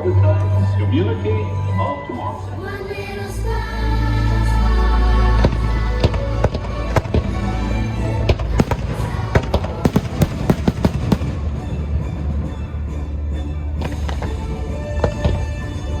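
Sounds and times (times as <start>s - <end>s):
fireworks bangs and crackles: 8.3s - 12.3s
loud soundtrack music: 8.6s - 12.8s.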